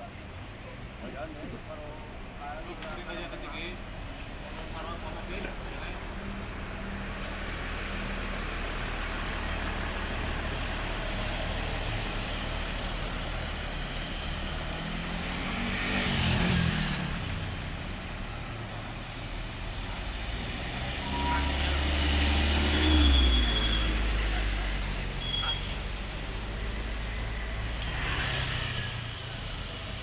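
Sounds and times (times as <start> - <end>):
vehicle passing by: 8.7 - 25.2, 25.8 - 30.0.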